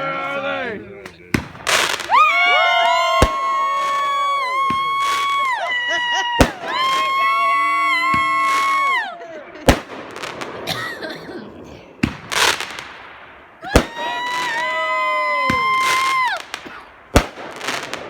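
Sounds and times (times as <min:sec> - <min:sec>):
firework bangs: 0:01.0 - 0:18.0
firework crackling: 0:01.3 - 0:18.0
firework whistle: 0:01.8 - 0:05.6.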